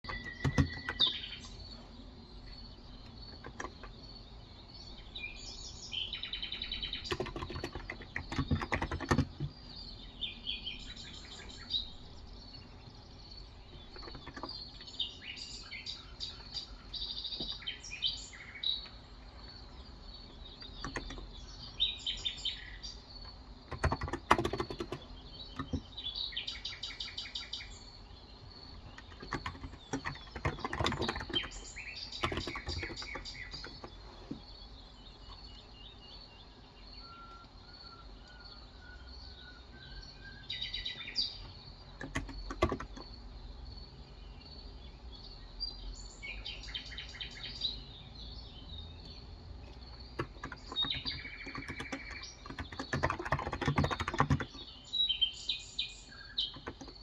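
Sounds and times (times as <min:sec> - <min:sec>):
typing on a keyboard: 0:00.0 - 0:01.5, 0:03.0 - 0:04.0, 0:06.6 - 0:09.9, 0:13.7 - 0:14.9, 0:20.5 - 0:21.4, 0:23.2 - 0:26.0, 0:28.5 - 0:34.4, 0:41.9 - 0:43.2, 0:49.7 - 0:54.8, 0:56.4 - 0:57.0
birds chirping: 0:00.0 - 0:57.0.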